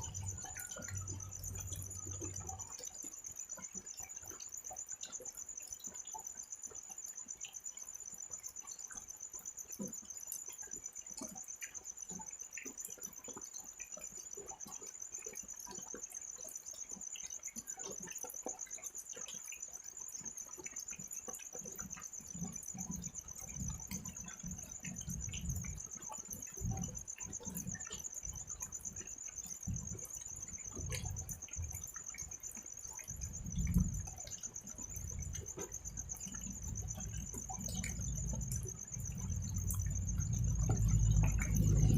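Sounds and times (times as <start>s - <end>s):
crickets trilling: 0.0s - 41.9s
light drizzle: 0.0s - 41.9s
low rumble: 35.9s - 41.9s.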